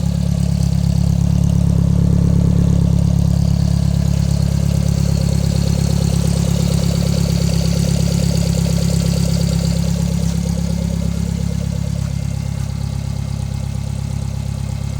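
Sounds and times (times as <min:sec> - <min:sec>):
car engine idling: 0:00.0 - 0:14.9.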